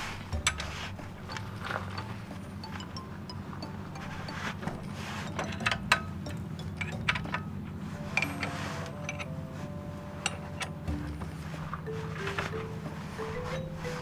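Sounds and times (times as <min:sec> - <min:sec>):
metallic clinks and knocks: 0:00.0 - 0:09.4
quiet background music: 0:00.0 - 0:14.0.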